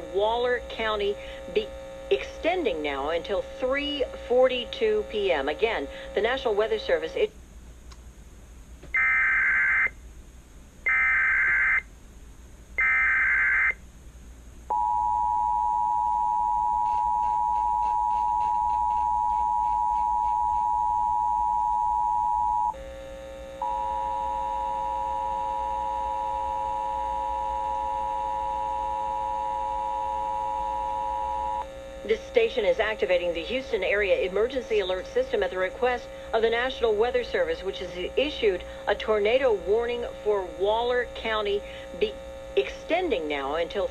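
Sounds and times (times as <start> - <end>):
alert data bursts: 12.8 - 13.8
two-tone attention signal: 14.7 - 22.8, 23.6 - 31.6
low steady tone: 14.7 - 31.7.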